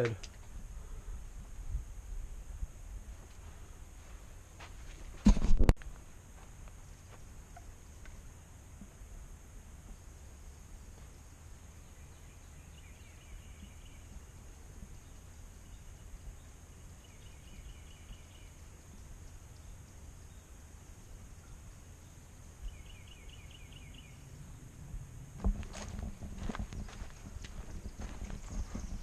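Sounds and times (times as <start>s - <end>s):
steady low rumble: 0.3s - 12.8s, 23.6s - 29.0s
small bird singing: 9.9s - 24.7s, 26.6s - 29.0s.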